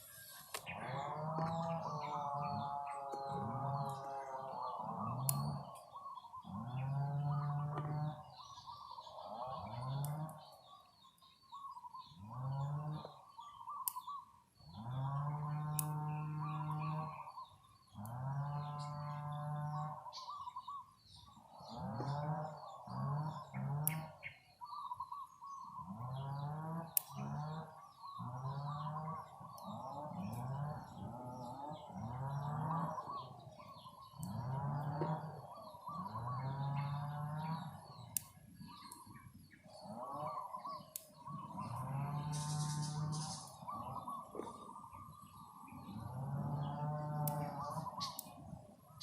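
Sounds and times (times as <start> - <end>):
low animal call: 0.0 - 49.0
small birds chirping: 0.0 - 49.0
sharp clicks: 15.8 - 16.0.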